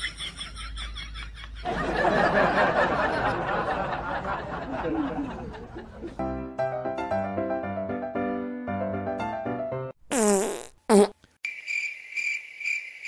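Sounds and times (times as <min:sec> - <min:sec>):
people laughing: 0:00.0 - 0:06.2.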